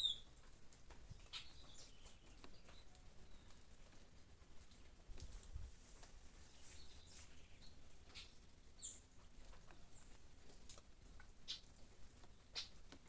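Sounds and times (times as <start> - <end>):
small birds chirping: 0.0 - 0.4, 1.0 - 3.9, 6.4 - 10.2, 11.5 - 12.9
faint rain falling: 0.0 - 13.0.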